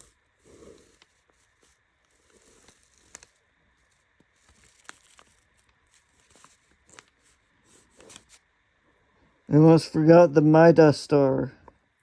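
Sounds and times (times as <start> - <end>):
paper rustling: 0.0 - 8.4.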